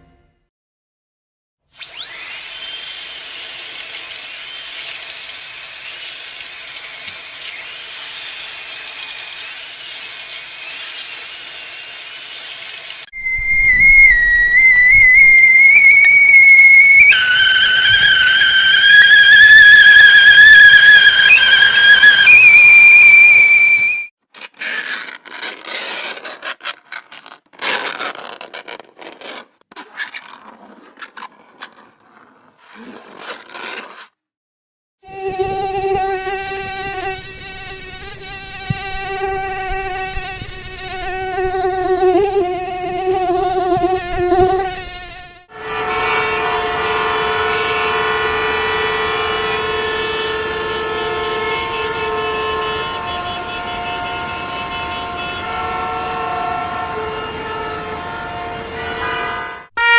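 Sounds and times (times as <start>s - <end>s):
mosquito buzzing in flight: 15.7s - 22.6s, 35.1s - 45.5s
scratching and scraping: 24.4s - 34.2s.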